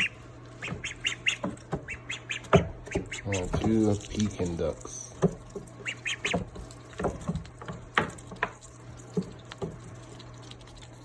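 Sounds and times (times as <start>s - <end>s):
duckling peeps: 0.0s - 3.7s, 5.7s - 6.6s
ducklings pecking: 0.0s - 11.0s.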